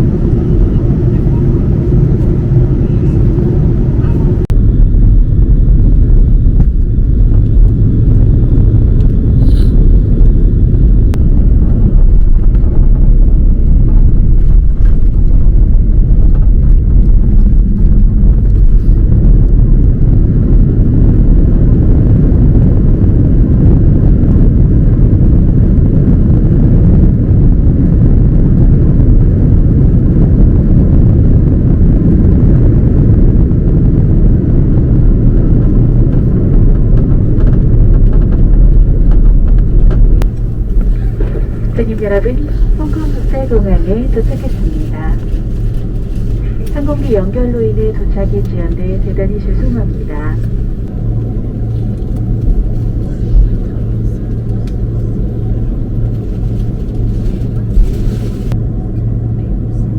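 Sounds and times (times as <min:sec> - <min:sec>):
low rumble in airliner cabin: 0:00.0 - 0:59.9.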